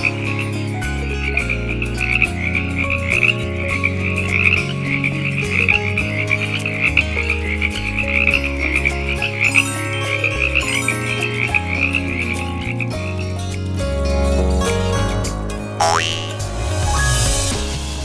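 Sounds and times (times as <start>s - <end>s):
background music with low notes: 0.0s - 18.0s
frogs croaking: 1.3s - 13.6s, 15.8s - 16.4s.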